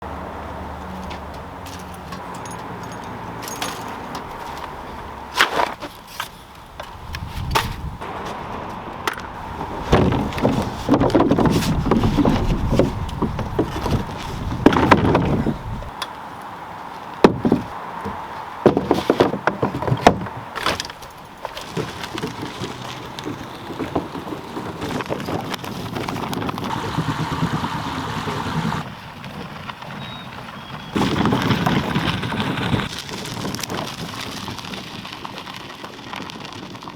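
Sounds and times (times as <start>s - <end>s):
objects knocking and rattling: 1.1s - 4.8s, 9.0s - 15.6s, 17.2s - 27.6s.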